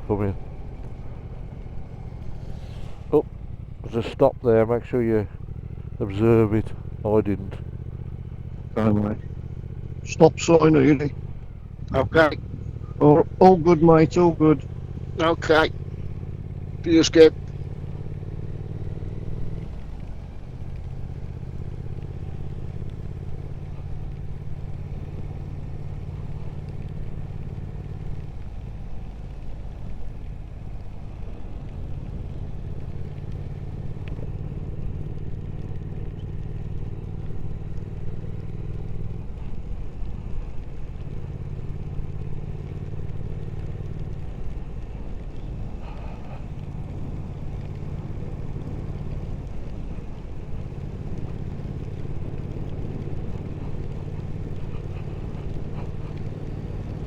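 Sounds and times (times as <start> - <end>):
motorcycle engine running: 0.0 - 57.0
road noise: 0.0 - 57.0.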